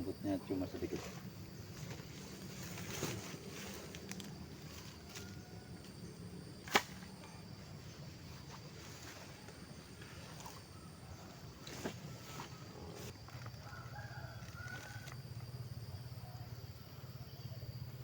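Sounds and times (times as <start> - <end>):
sharp snap: 6.6 - 7.0.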